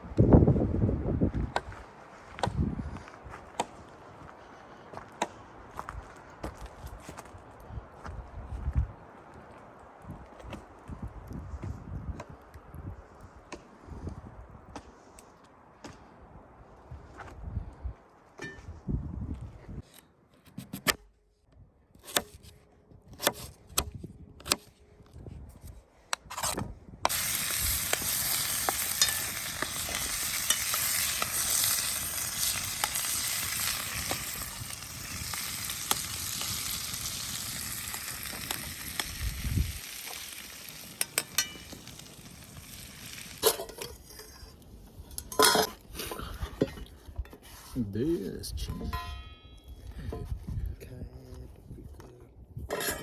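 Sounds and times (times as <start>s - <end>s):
food sizzling in a pan: 27.1s - 43.6s.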